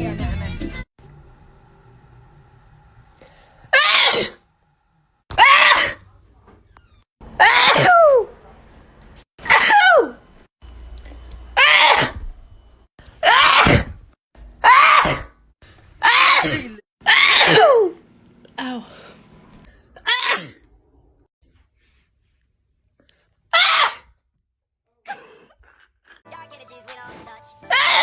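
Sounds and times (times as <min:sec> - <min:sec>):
person sneezing: 0:03.8 - 0:04.4, 0:14.8 - 0:15.3, 0:16.2 - 0:18.0.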